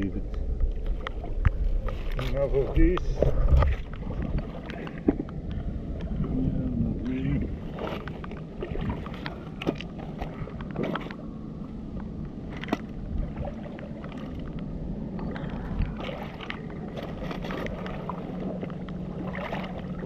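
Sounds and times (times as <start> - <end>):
low rumble: 0.0 - 20.0.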